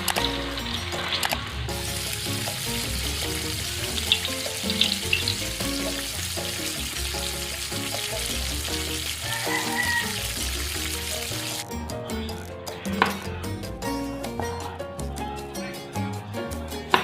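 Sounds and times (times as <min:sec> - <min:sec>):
oil sizzling deep-frying: 0:00.0 - 0:11.6
background music: 0:00.0 - 0:17.0.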